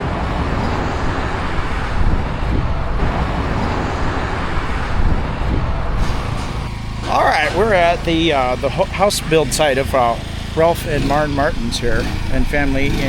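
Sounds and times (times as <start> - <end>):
wind on microphone: 0.0 - 7.0
motorcycle engine: 0.0 - 13.0.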